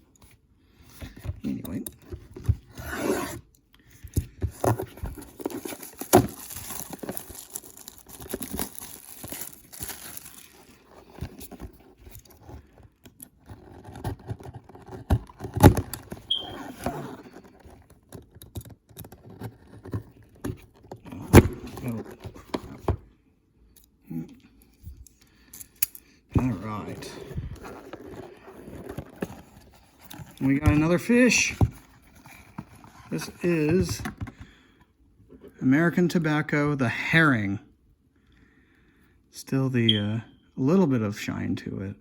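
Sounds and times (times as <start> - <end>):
packaging crinkling and tearing: 4.5 - 20.3.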